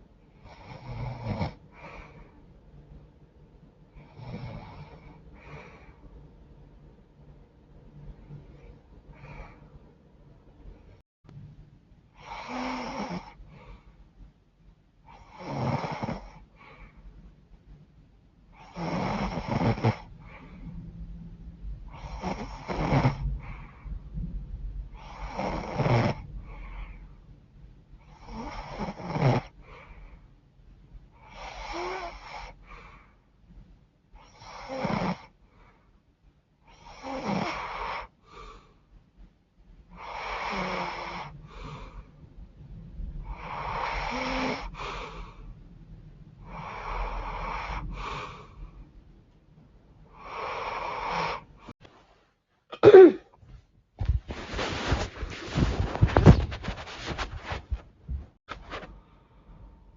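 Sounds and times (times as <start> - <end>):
woman snoring through stuffed nose: 0.5 - 2.0, 4.1 - 5.6, 12.2 - 13.4, 15.2 - 16.4, 18.6 - 20.1, 21.9 - 23.3, 25.0 - 26.3, 28.1 - 29.6, 31.2 - 32.6, 34.2 - 35.3, 36.7 - 38.4, 40.0 - 41.6, 43.3 - 45.2, 50.2 - 51.5.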